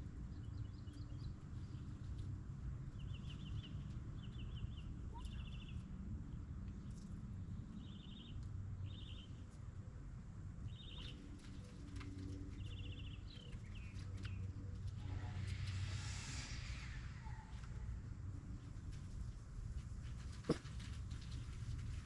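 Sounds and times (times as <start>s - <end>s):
steady low rumble: 10.2s - 22.0s
hiss: 15.6s - 17.2s.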